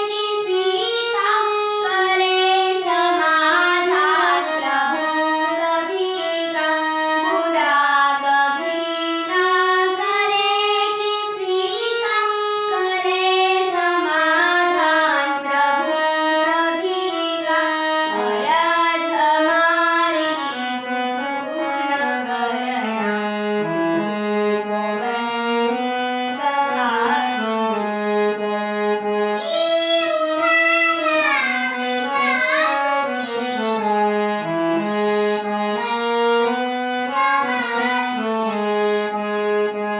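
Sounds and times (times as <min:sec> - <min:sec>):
girl singing: 0:00.0 - 0:20.6, 0:21.4 - 0:23.3, 0:26.4 - 0:27.6, 0:29.3 - 0:34.4, 0:35.8 - 0:38.6
instrumental accompaniment: 0:00.0 - 0:39.9.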